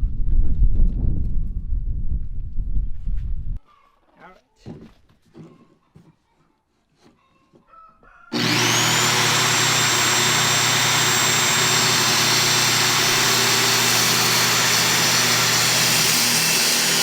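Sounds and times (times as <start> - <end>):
motor machine whining: 8.3 - 17.0.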